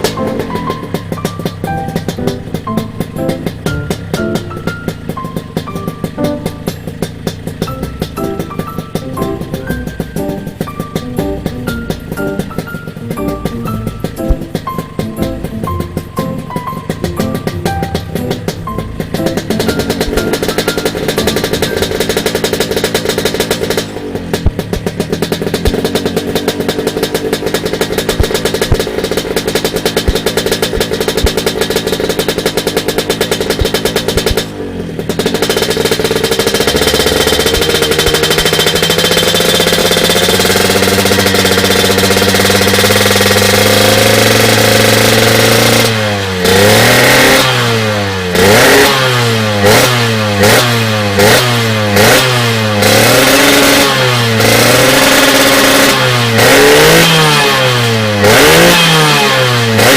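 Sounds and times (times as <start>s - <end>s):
two-stroke motorcycle engine revving: 0.0s - 59.9s.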